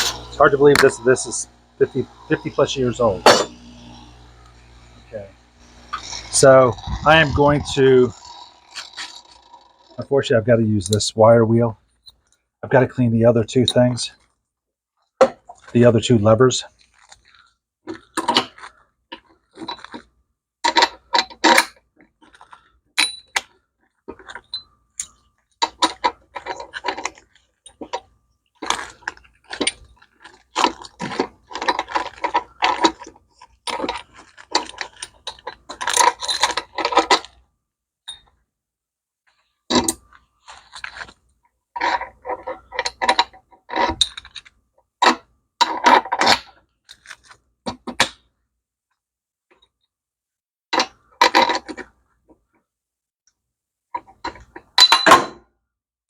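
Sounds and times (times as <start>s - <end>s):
metal parts clinking and rattling: 24.1s - 37.4s, 39.7s - 41.2s, 41.8s - 48.2s, 54.0s - 55.3s.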